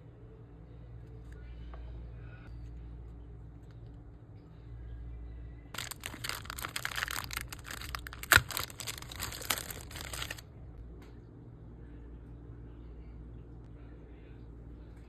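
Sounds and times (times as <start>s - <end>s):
packaging crinkling and tearing: 5.8s - 10.4s.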